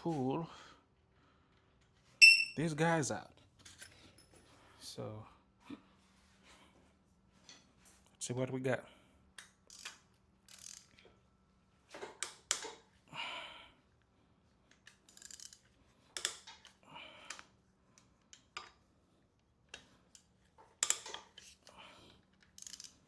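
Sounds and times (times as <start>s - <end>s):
ratchet rasping: 9.7s - 11.0s, 14.8s - 16.8s, 22.3s - 23.0s
metallic tool clicks and clinks: 19.7s - 21.5s.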